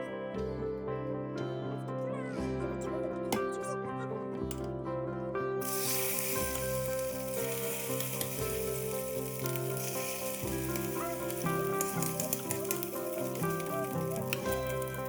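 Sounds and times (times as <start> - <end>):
background music: 0.0 - 15.0
food sizzling in a frying pan: 5.6 - 15.0.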